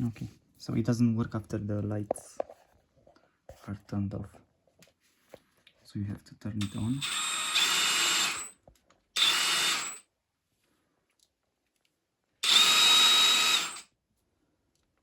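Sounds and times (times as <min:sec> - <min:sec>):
impact wrench whining: 0:06.6 - 0:08.6, 0:09.2 - 0:10.0, 0:12.4 - 0:13.9.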